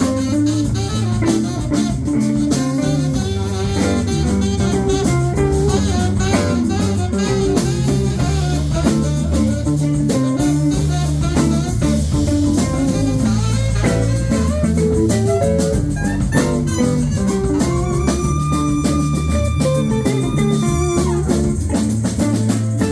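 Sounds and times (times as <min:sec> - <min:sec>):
drum kit beat: 0:00.0 - 0:22.9
guitar lines: 0:00.0 - 0:22.9
live band playing: 0:00.0 - 0:22.9.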